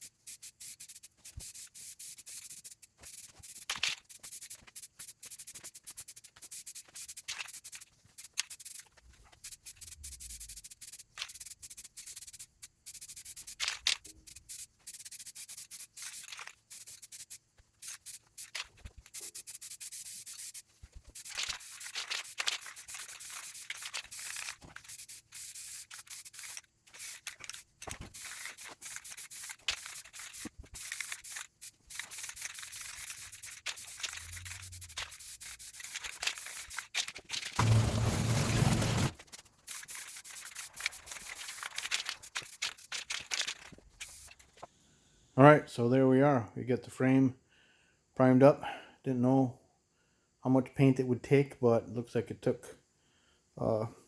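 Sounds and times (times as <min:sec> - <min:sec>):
aerosol spray can hissing: 0:00.1 - 0:37.0, 0:37.6 - 0:43.1.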